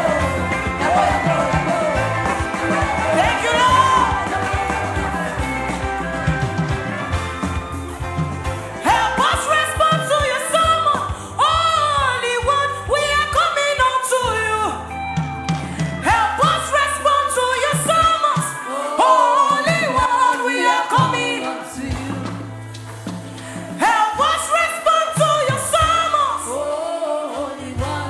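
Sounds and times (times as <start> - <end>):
sustained low instrumental notes: 0.0 - 11.7
person singing gospel: 0.0 - 28.0.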